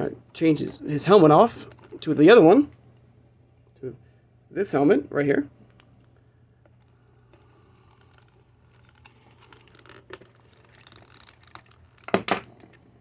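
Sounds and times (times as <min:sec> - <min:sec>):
plastic toy clicks and rubbing: 0:07.6 - 0:12.8.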